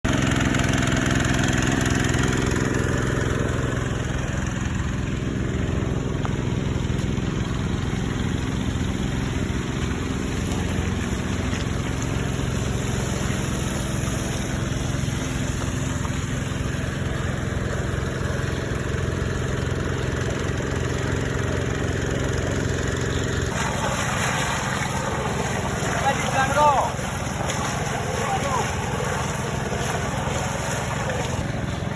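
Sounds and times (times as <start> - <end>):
small petrol engine running: 0.0 - 31.9.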